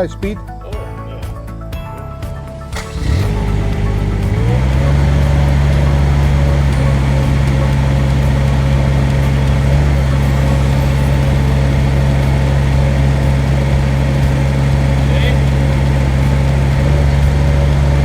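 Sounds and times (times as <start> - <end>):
excavator engine running: 2.5 - 18.0.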